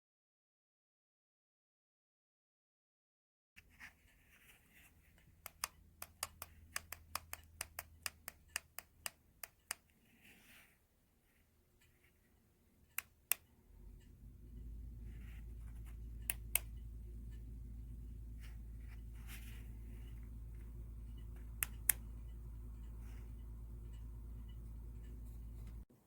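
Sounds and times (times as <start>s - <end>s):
sharp clicks: 5.4s - 9.9s, 12.9s - 13.5s, 15.8s - 17.4s, 19.6s - 25.8s
ceiling fan motor humming: 12.0s - 25.9s.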